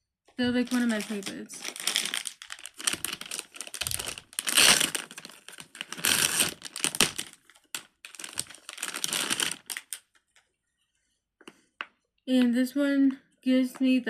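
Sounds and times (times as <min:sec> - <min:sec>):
plastic crinkling and rustling: 0:00.4 - 0:10.4.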